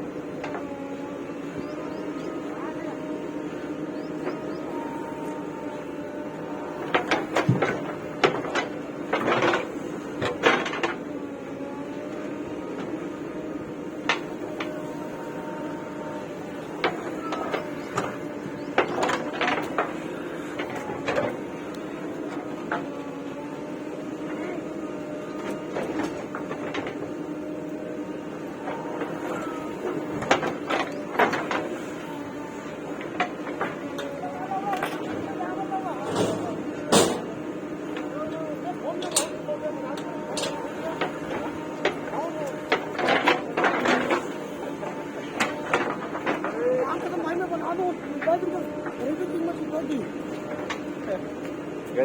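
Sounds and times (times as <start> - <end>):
backhoe engine hum: 0.0 - 52.0
sharp metal clanks and knocks: 36.0 - 37.4.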